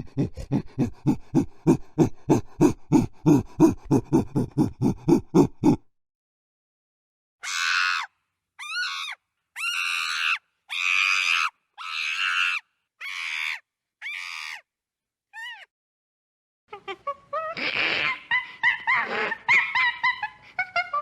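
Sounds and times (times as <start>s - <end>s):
chimpanzee screaming: 7.4s - 14.6s.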